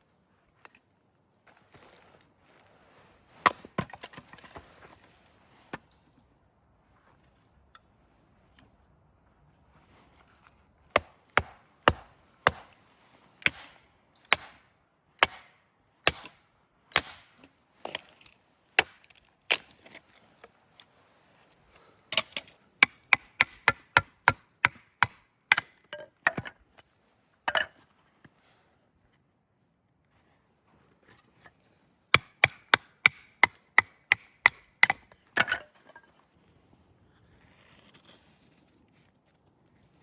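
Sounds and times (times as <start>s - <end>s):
firewood being chopped: 3.4s - 4.6s, 10.9s - 12.8s, 13.4s - 20.5s, 22.1s - 26.6s, 32.1s - 35.8s.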